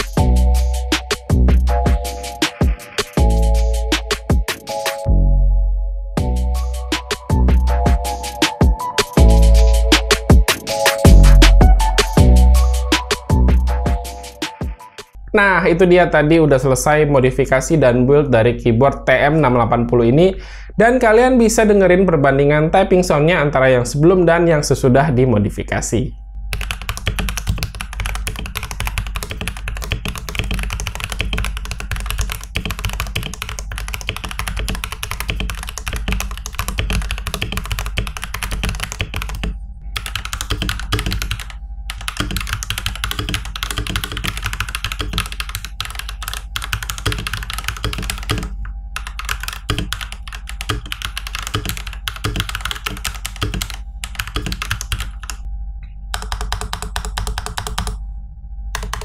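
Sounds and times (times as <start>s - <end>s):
fast mechanical keyboard typing: 26.5s - 55.5s, 56.2s - 58.0s, 58.8s - 59.0s.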